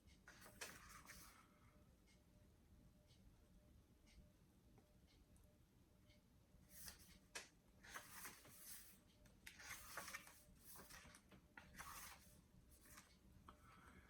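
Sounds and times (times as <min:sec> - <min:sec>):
book pages rustling: 0:00.3 - 0:01.3, 0:06.8 - 0:13.2
soft clicks of book: 0:00.3 - 0:01.4, 0:06.7 - 0:13.6.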